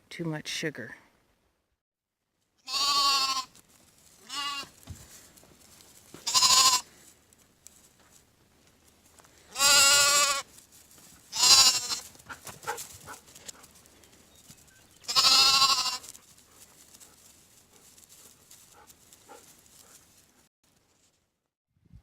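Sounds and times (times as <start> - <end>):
goat bleating: 2.6 - 3.5, 4.2 - 4.7, 6.2 - 6.9, 9.5 - 10.5, 11.3 - 12.1, 15.0 - 16.1.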